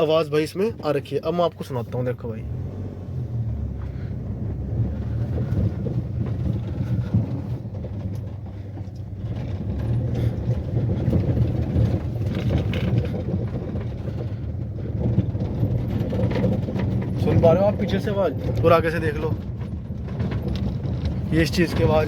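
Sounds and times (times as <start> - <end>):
road and engine rumble: 0.0 - 22.0
trim rattling: 0.0 - 22.0.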